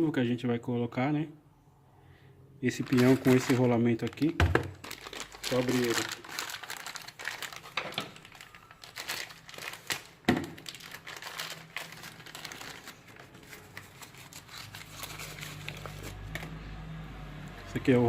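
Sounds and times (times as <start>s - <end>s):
packaging crinkling: 2.7s - 16.5s.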